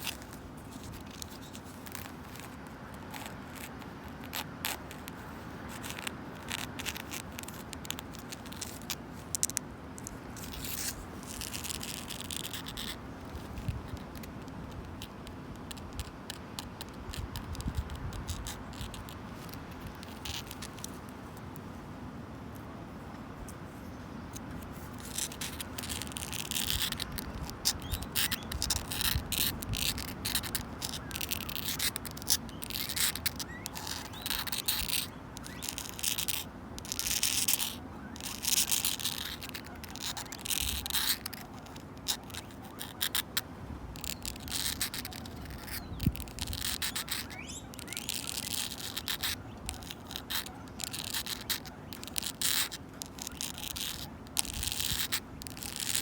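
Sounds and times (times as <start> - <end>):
low background noise: 0.0 - 56.0
fingernails scratching wood: 24.4 - 43.4, 44.0 - 56.0.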